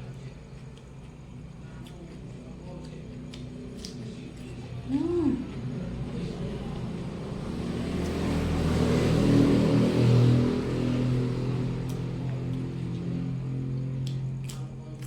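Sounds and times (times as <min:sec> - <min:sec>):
motor vehicle passing: 0:05.4 - 0:14.4.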